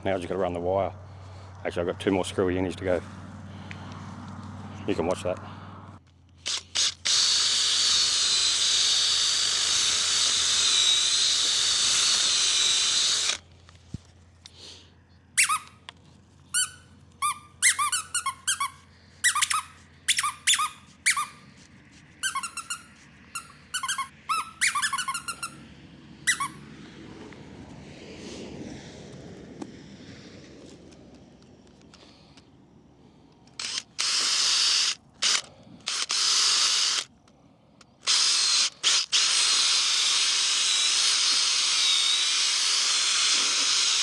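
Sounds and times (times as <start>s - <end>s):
power drill whining: 6.4s - 13.4s, 33.6s - 37.1s, 38.0s - 44.0s
short high squeaks: 15.4s - 15.9s, 16.5s - 25.7s, 26.3s - 26.6s.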